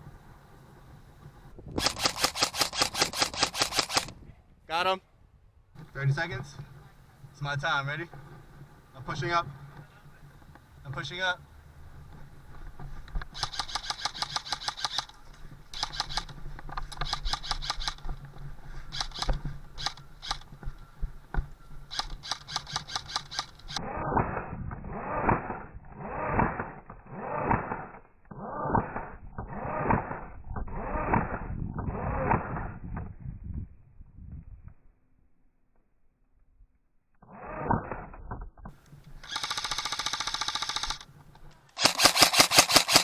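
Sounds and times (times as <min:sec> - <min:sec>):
airsoft rifle full-auto bursts: 0:01.8 - 0:04.1, 0:13.3 - 0:16.3, 0:16.9 - 0:18.0, 0:18.9 - 0:20.4, 0:21.9 - 0:23.8, 0:39.2 - 0:41.1, 0:41.8 - 0:43.0.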